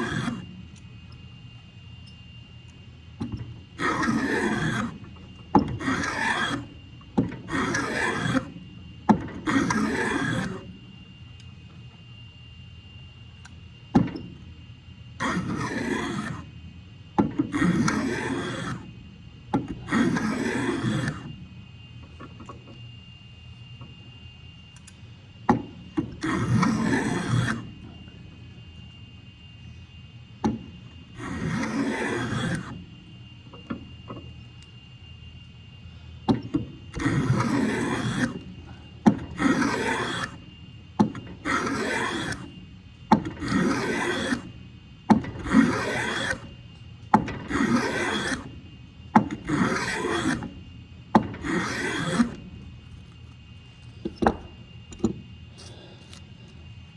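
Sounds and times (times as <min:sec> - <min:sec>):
hand plane rasping on board: 0:00.0 - 0:00.5, 0:03.8 - 0:06.7, 0:07.3 - 0:08.6, 0:09.2 - 0:10.7, 0:15.2 - 0:16.5, 0:17.4 - 0:18.9, 0:19.7 - 0:21.3, 0:26.2 - 0:27.8, 0:31.2 - 0:32.8, 0:36.9 - 0:40.4, 0:41.0 - 0:44.5, 0:45.1 - 0:46.5, 0:47.2 - 0:48.5, 0:49.2 - 0:50.6, 0:51.2 - 0:52.4.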